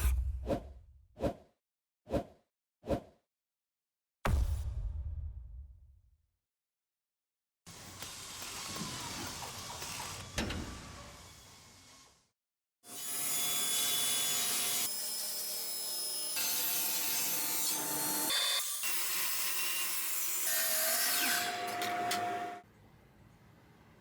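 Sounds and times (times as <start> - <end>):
power tool cutting wood: 12.9 - 22.6.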